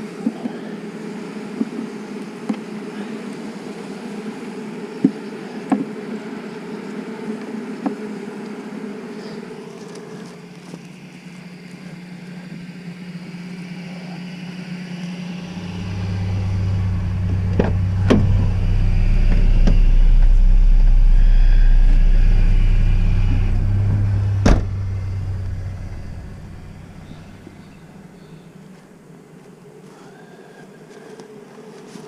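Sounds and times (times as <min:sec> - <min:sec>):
honeybees humming: 0:00.0 - 0:32.0
deep low rumble: 0:15.0 - 0:28.5
sharp knocks: 0:23.6 - 0:26.5.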